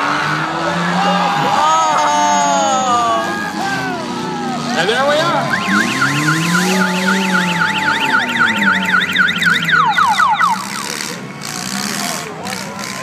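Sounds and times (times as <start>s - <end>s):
engine revving: 0.0s - 1.6s, 3.5s - 13.0s
siren yelping: 5.0s - 11.1s.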